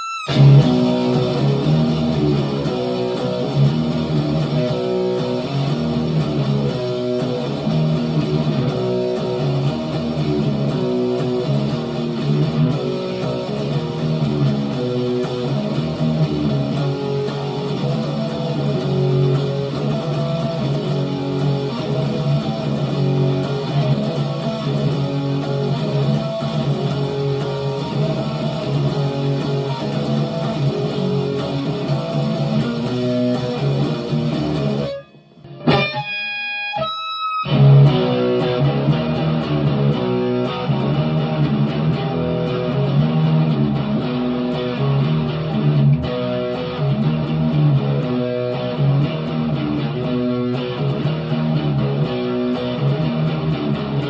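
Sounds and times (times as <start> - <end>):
distorted electric guitar riff: 0.0 - 54.0
ringing guitar notes: 0.0 - 54.0.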